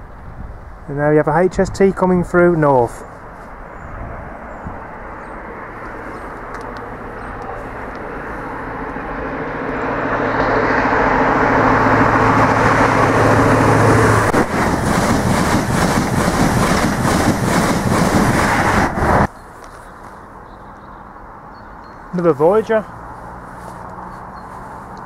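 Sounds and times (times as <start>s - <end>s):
diesel train engine: 4.9s - 19.7s
train wheels clattering over track: 12.5s - 19.3s.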